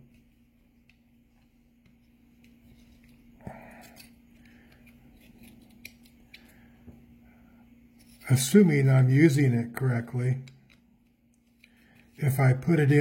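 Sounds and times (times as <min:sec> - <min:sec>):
knife scraping: 0:02.4 - 0:06.5.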